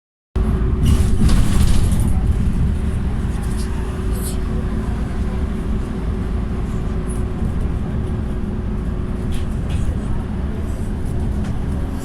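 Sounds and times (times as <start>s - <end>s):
vehicle engine rumble: 0.4s - 12.0s.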